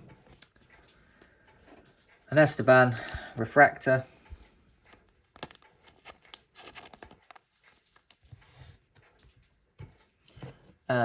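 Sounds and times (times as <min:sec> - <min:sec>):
cards rustling: 0:04.2 - 0:08.8
cards clicking: 0:05.3 - 0:08.4.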